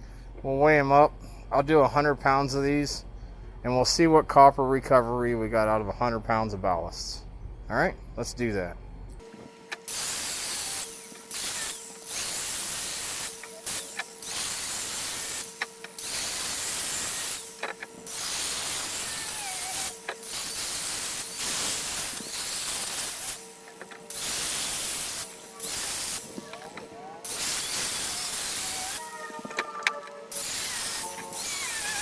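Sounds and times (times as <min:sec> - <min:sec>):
air hydraulic pump hissing: 0:09.2 - 0:32.0.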